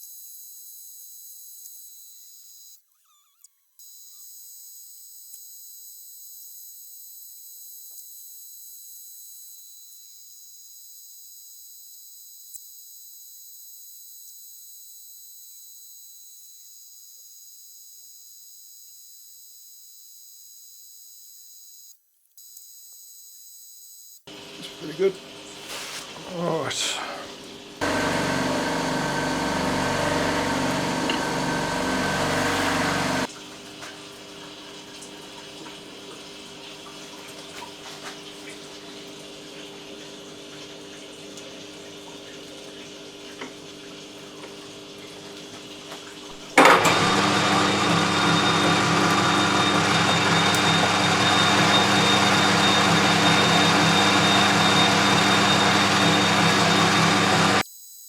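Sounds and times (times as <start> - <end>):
loud machine with high whine: 27.8 - 33.3, 46.6 - 57.6
machine tool motor running: 27.8 - 33.3, 46.6 - 57.6.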